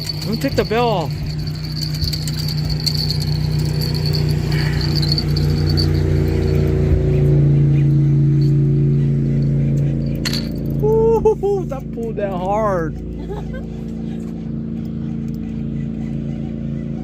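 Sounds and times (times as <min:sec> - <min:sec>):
faint high ringing: 0:00.0 - 0:07.0
engine running with low hum: 0:00.0 - 0:17.0.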